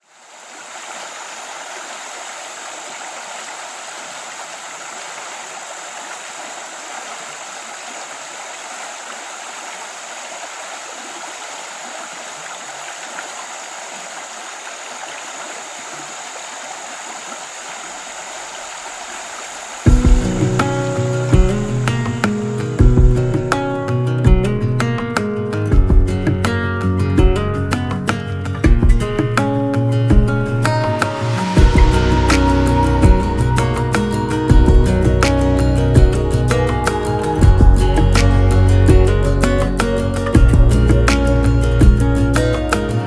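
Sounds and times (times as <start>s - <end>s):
steady rushing noise: 18.6s - 23.8s, 30.2s - 43.0s
faint high whine: 30.7s - 41.8s.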